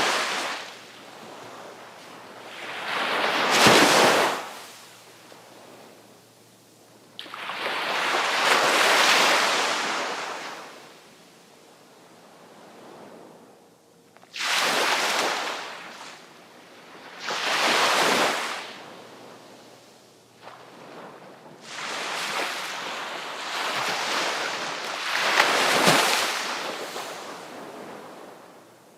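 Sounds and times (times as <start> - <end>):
sea waves breaking: 0.0 - 6.0, 7.1 - 11.0, 14.3 - 28.6.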